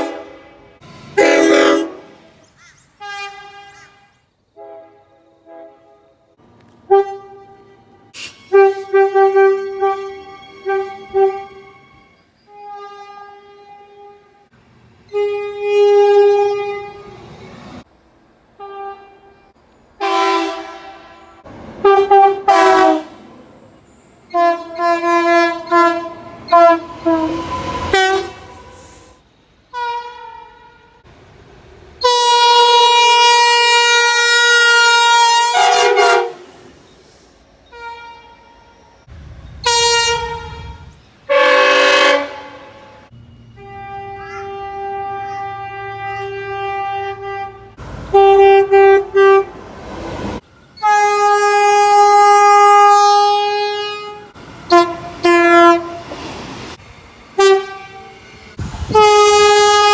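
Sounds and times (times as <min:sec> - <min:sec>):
locomotive horn blasts: 0:00.0 - 0:02.4, 0:03.0 - 0:14.5, 0:15.1 - 0:17.2, 0:18.6 - 0:23.4, 0:24.2 - 0:31.1, 0:32.0 - 0:36.7, 0:37.7 - 0:49.6, 0:50.8 - 0:56.1, 0:57.4 - 0:59.9.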